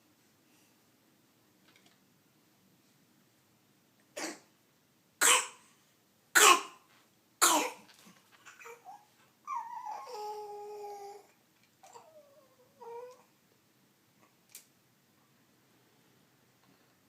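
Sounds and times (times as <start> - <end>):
cat coughing: 4.2 - 4.5, 5.2 - 5.6, 6.4 - 6.8, 7.4 - 7.8.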